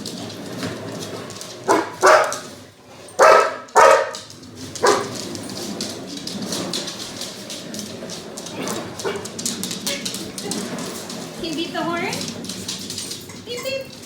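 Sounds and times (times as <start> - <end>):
dog barking: 1.7 - 2.5, 3.2 - 5.2, 9.0 - 9.3.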